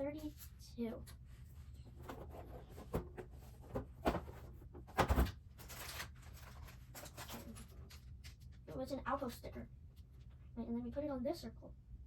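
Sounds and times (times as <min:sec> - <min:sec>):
papery rustles: 0:05.6 - 0:08.6.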